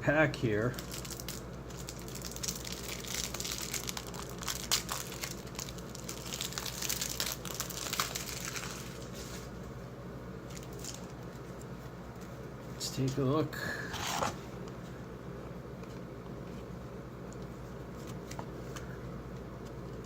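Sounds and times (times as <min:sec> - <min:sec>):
plastic wrapper crinkling: 0:00.6 - 0:09.5, 0:10.5 - 0:12.3.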